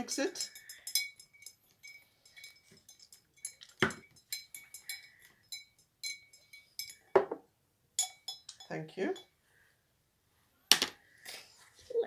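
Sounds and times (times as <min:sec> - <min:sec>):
spoon clinking in container: 0:00.0 - 0:07.4, 0:08.0 - 0:09.3.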